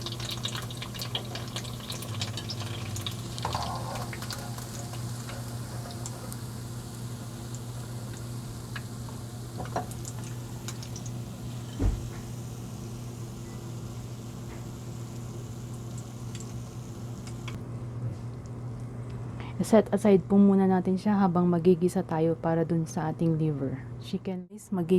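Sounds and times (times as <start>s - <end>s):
cooking oil crackling and popping: 0.0s - 17.6s
steady low hum: 0.0s - 24.9s.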